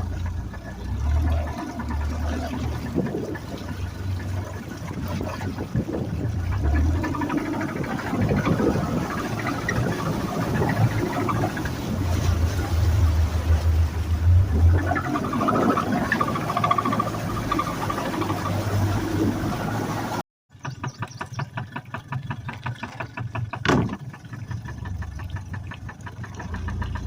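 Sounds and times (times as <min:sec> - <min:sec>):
rapid engine knocking: 0:00.0 - 0:11.8, 0:15.1 - 0:18.5, 0:20.5 - 0:27.0
outboard engine humming: 0:00.0 - 0:27.0.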